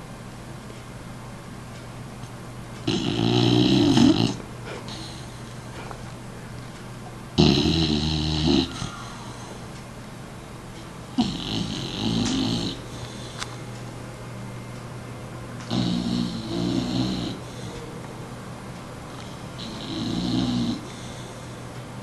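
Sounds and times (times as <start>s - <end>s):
dog snoring: 2.8s - 5.9s, 7.4s - 9.4s, 11.1s - 13.4s, 15.7s - 17.8s, 19.1s - 21.6s.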